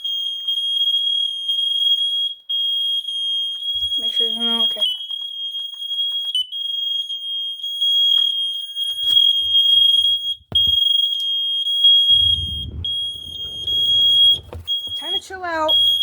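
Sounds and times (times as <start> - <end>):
smoke alarms beeping: 0.0 - 16.0
low rumble: 12.2 - 16.0.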